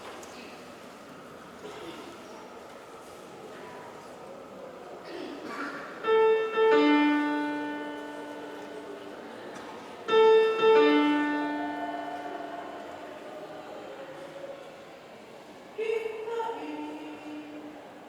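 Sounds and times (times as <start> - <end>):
piano two-note figure: 6.1 - 9.2, 10.1 - 12.7.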